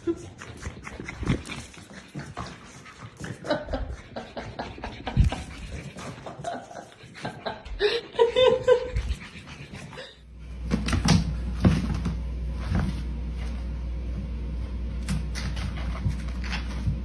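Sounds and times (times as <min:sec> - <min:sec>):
low hum: 0:08.6 - 0:17.0.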